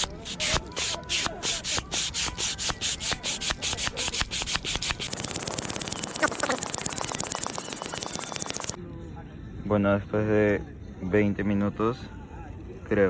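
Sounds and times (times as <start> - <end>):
bicycle pump hissing: 0.0 - 8.8.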